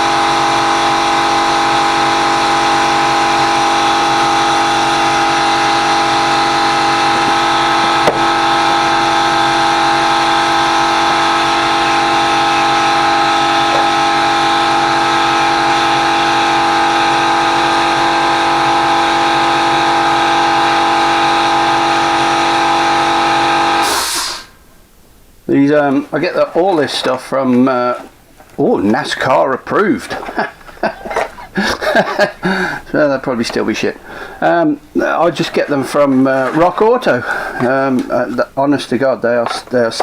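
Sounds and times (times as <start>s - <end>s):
machine running steadily: 0.0s - 25.0s, 30.0s - 38.6s.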